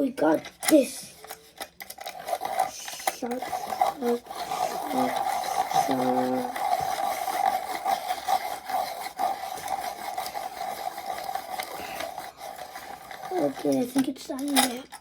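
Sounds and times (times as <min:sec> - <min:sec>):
blades grinding pencil: 0:00.9 - 0:15.0
electric pencil sharpener motor hum: 0:02.1 - 0:13.4.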